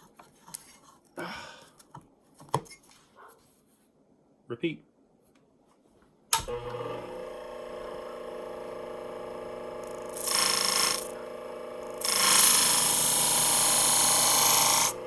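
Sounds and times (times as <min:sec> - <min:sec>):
sharpener motor running: 0:06.5 - 0:15.0
blade grinding on abrasive plate: 0:09.8 - 0:15.0.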